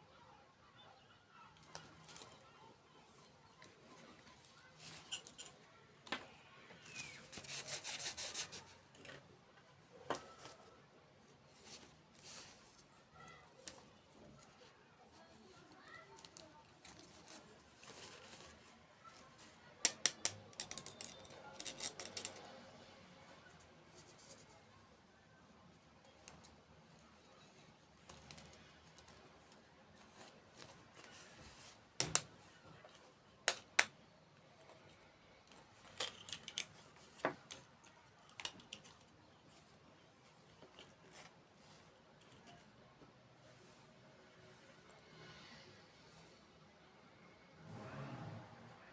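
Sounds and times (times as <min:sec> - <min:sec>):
crisp clicks and crackles: 0:01.5 - 0:05.6, 0:11.6 - 0:22.7, 0:25.8 - 0:31.4, 0:34.6 - 0:42.7
small hard objects clicking: 0:19.8 - 0:22.4.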